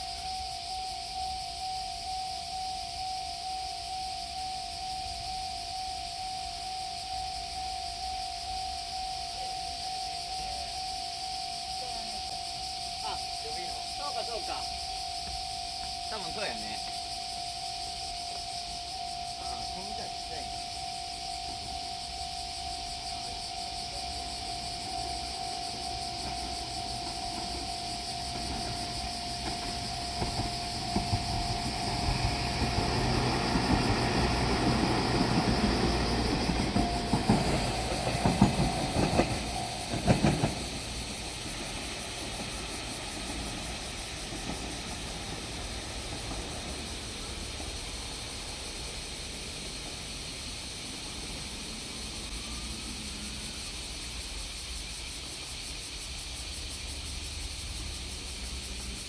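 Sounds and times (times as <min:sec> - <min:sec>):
steady high tone: 0:00.0 - 0:47.7
train low rumble: 0:00.0 - 0:59.0
wheels clacking over rail joints: 0:22.6 - 0:50.3.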